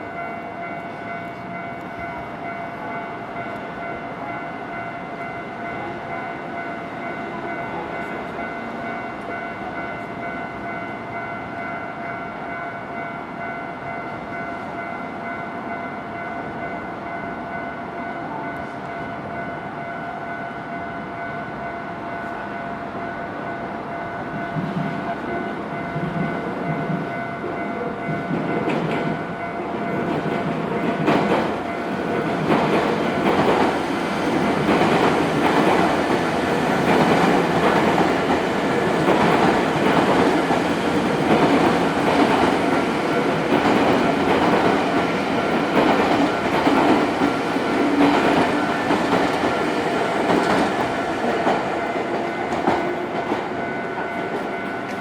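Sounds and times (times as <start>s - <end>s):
train wheels clacking over rail joints: 30.0s - 55.0s.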